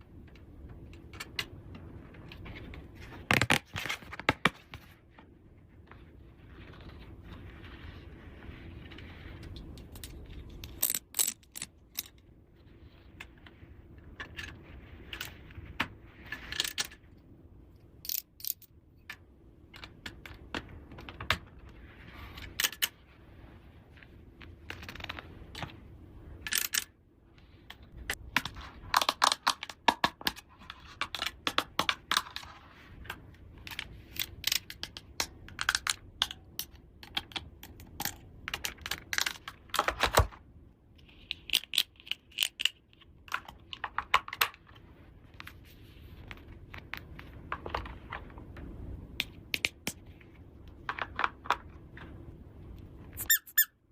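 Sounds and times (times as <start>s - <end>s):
plastic toy pieces clattering: 9.9s - 12.2s.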